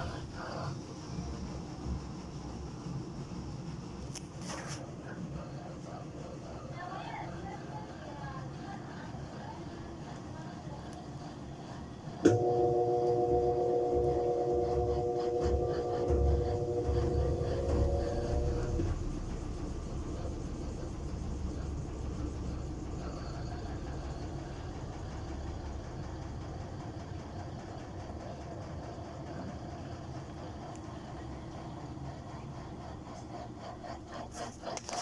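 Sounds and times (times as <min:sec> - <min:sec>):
washing machine motor whine: 0:00.0 - 0:04.1, 0:05.0 - 0:35.0
drum coasting with low rumble: 0:12.3 - 0:34.2.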